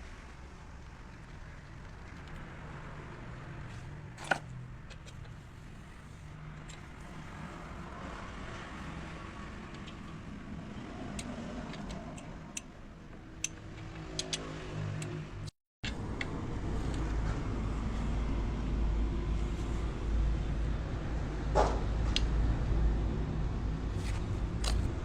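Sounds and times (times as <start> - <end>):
sharp clicks: 11.1 - 15.5.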